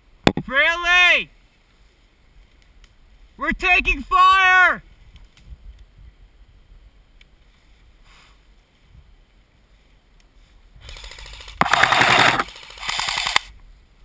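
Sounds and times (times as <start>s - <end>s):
airsoft gun firing bursts: 10.9s - 13.5s.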